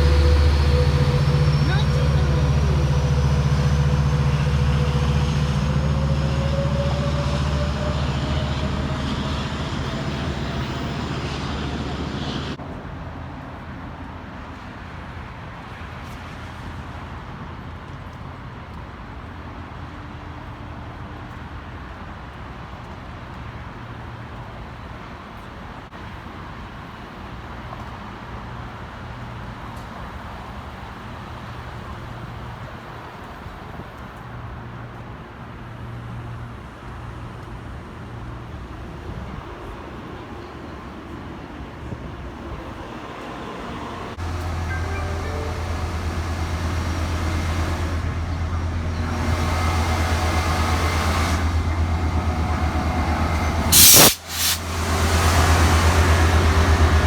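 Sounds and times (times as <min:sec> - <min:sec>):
low engine rumble: 0:00.0 - 0:13.0, 0:40.2 - 0:57.0.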